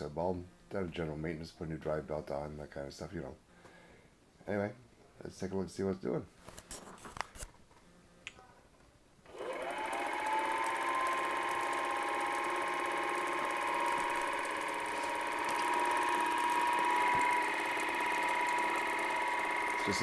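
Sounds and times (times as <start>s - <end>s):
film projector motor whine: 9.3s - 20.0s
film transport mechanical chatter: 9.3s - 20.0s.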